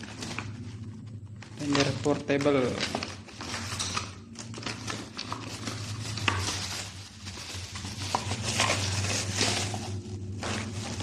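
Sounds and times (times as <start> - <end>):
hard objects clattering and scraping: 0.0 - 11.0
steady low hum: 0.0 - 11.0.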